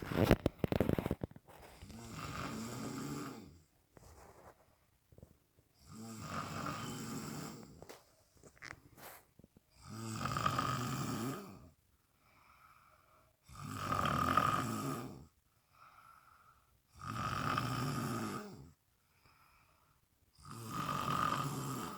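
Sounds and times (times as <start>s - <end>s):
loud rasping snores: 1.8s - 3.7s, 5.8s - 8.0s, 9.8s - 11.8s, 13.4s - 15.3s, 16.9s - 18.8s, 20.4s - 21.9s.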